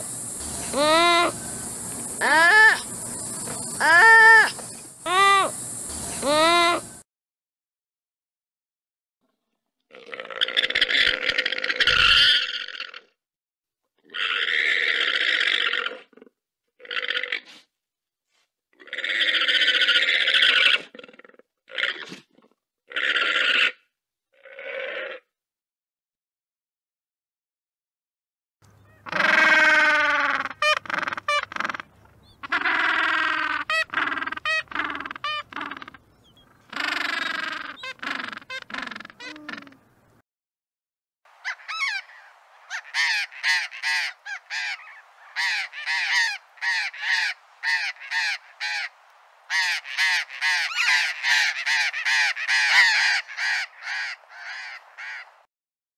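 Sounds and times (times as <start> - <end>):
animal rough calls: 9.9 - 13.2, 14.0 - 17.7, 18.8 - 25.3, 29.0 - 39.8, 41.4 - 48.9, 49.5 - 55.4.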